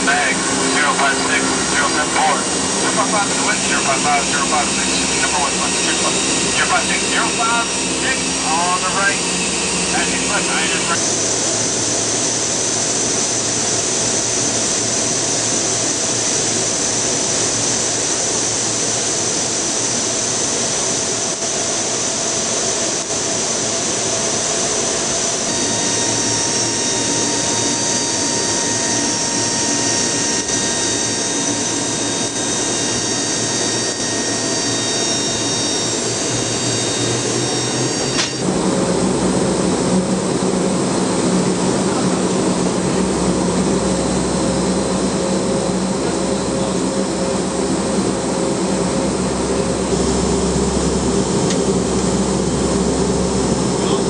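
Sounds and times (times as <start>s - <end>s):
steady tones: 0.0s - 11.0s
turboprop engines whining: 0.0s - 54.0s.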